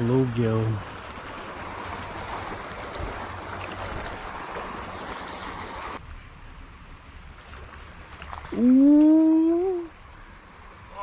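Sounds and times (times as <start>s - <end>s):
running water rushing: 0.0s - 6.0s.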